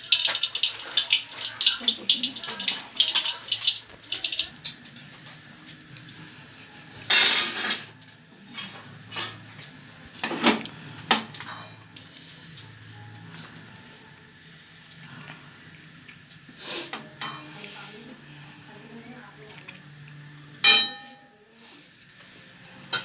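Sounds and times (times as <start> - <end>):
dishes and utensils clattering: 0.0 - 5.8, 6.4 - 13.4, 16.9 - 17.5, 20.6 - 21.3, 22.8 - 23.0
dish scraping: 7.0 - 9.6.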